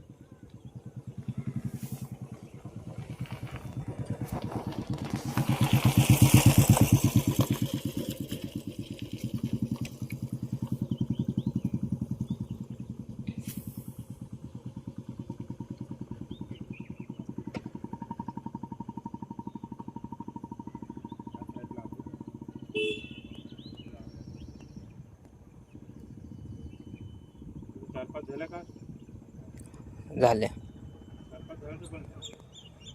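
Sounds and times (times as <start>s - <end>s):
small engine running: 0.1s - 23.6s.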